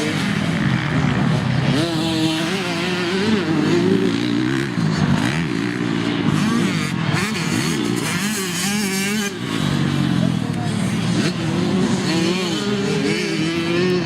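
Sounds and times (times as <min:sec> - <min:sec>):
dirt bikes revving past: 0:00.0 - 0:14.0.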